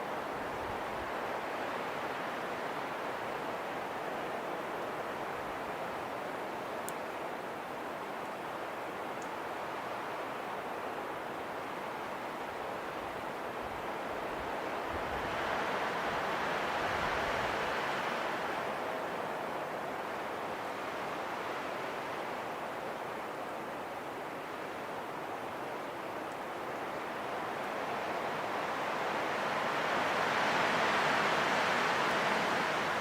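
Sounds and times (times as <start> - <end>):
rushing wind: 13.0 - 19.2, 27.0 - 33.0.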